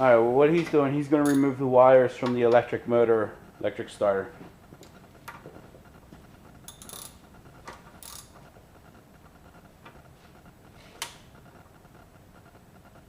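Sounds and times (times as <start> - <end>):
ratchet wrench clicking: 6.7 - 7.2, 8.0 - 8.4.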